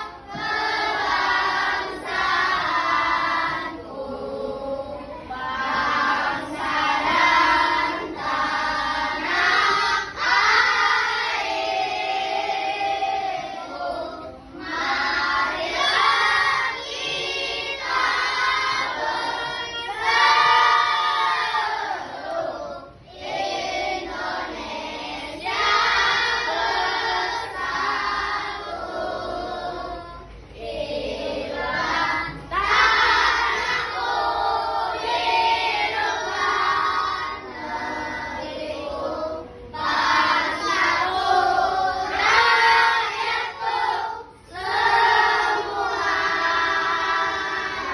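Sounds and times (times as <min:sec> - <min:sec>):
children singing in unison: 0:00.0 - 0:47.9.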